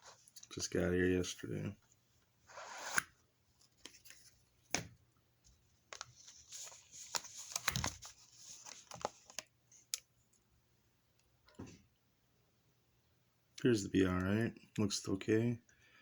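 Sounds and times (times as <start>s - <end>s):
packaging crinkling and tearing: 6.0s - 10.0s.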